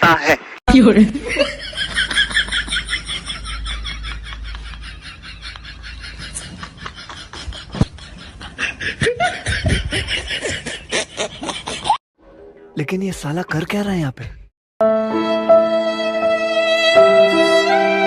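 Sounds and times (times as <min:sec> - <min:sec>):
person laughing: 0:01.2 - 0:12.0.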